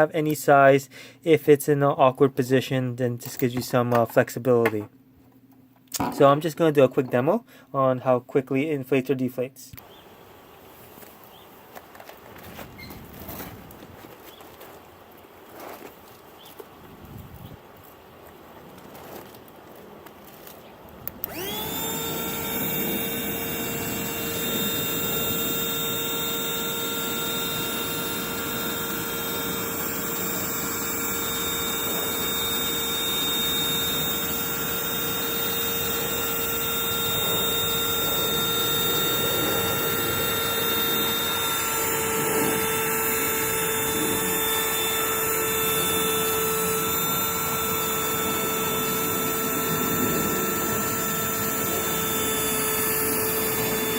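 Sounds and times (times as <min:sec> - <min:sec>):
electric air pump whining: 0:21.0 - 0:53.9.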